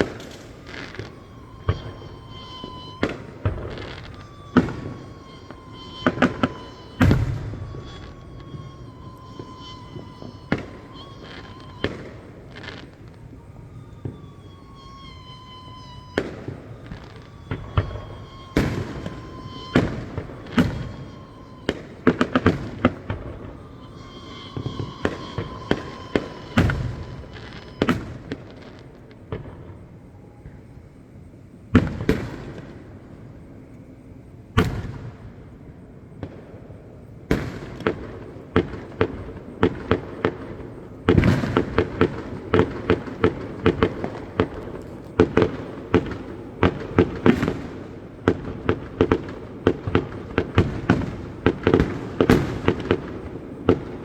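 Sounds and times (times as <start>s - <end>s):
distant fireworks bangs: 0.0s - 54.0s.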